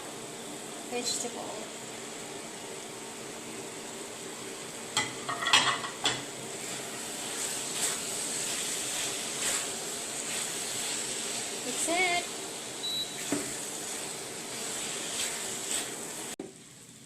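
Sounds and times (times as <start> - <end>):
sauce sizzling in a pan: 0.0 - 17.0
utensil clattering against pan: 5.0 - 6.2
soft stirring: 6.6 - 11.7.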